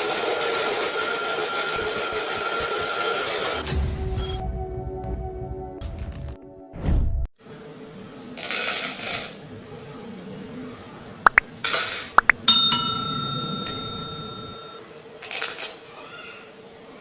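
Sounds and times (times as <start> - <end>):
metal struck ringing: 12.5 - 14.7.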